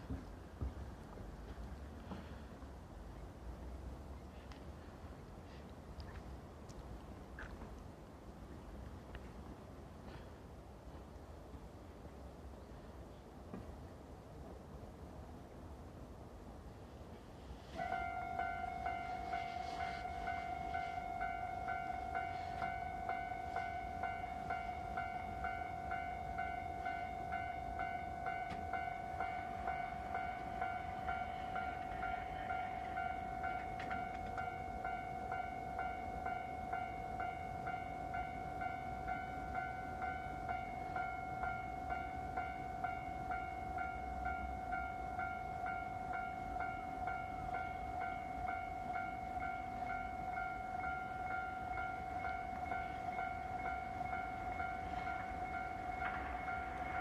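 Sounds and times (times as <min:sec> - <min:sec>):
level crossing warning bell: 0:17.7 - 0:57.0.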